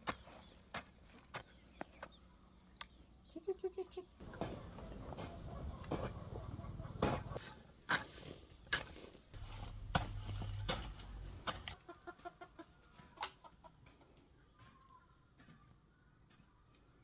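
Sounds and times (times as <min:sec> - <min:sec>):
chickens clucking: 0:01.4 - 0:07.7, 0:09.6 - 0:15.7.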